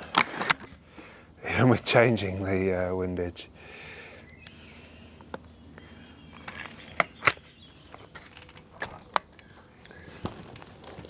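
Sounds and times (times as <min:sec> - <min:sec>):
air rifle clicks and knocks: 0:06.3 - 0:11.0.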